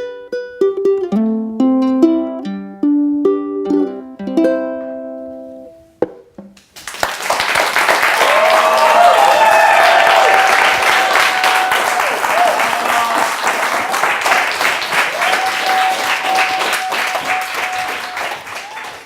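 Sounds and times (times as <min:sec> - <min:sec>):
ukulele strummed chords: 0:00.0 - 0:06.6
audience applause: 0:06.8 - 0:19.0.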